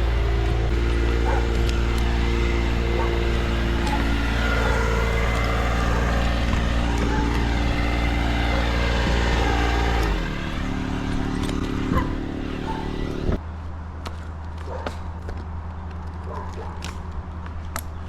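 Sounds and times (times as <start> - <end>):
motor engine running: 0.0 - 13.4.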